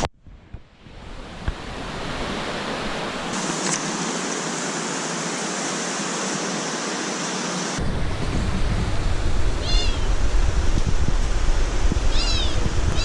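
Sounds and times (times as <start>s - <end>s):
stream rushing: 0.8s - 13.0s
wind buffeting microphone: 7.8s - 13.0s
high falling bird call: 12.1s - 13.0s.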